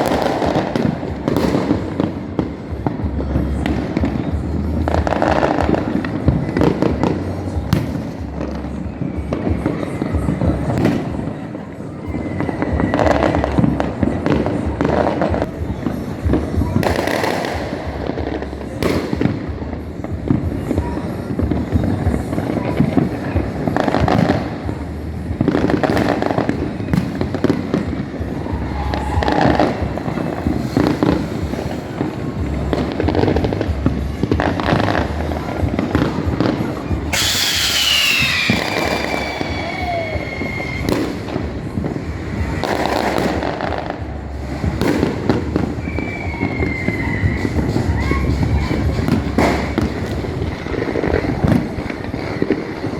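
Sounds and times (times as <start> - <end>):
firecracker pops: 0.0 - 2.6, 4.9 - 8.3, 9.2 - 11.5, 12.8 - 18.0, 18.7 - 24.8, 25.4 - 52.9
fireworks bangs: 0.0 - 52.9
rumble of distant explosions: 0.0 - 52.9
loud high falling whistle: 37.2 - 40.9, 45.8 - 47.6.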